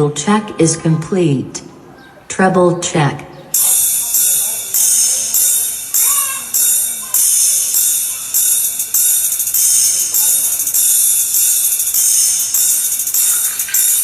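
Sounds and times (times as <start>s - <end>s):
tambourine-like percussion hits: 3.6s - 14.0s.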